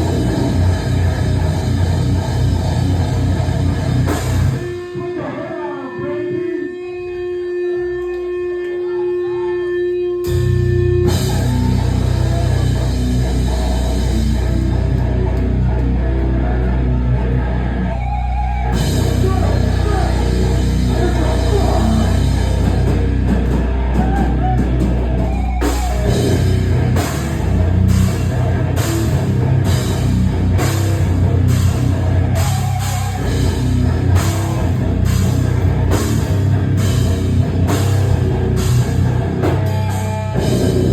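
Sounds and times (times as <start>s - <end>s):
hardcore band playing loud: 0.0s - 40.9s.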